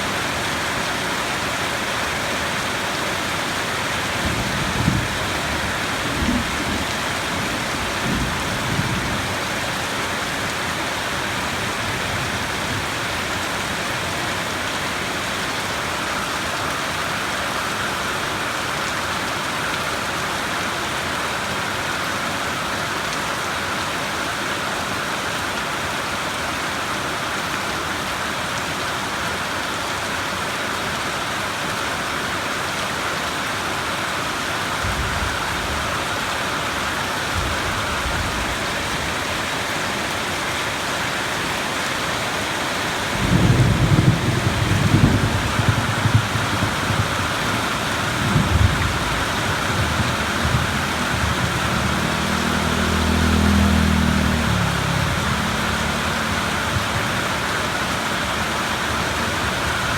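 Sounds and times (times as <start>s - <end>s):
steady rain falling: 0.0s - 59.9s
distant thunder rumble: 43.1s - 52.1s.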